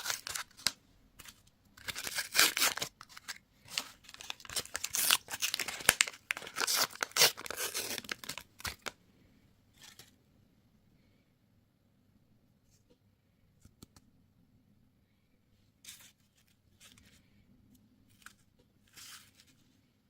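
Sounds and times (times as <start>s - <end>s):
candy wrapper crinkling: 0.0s - 9.0s.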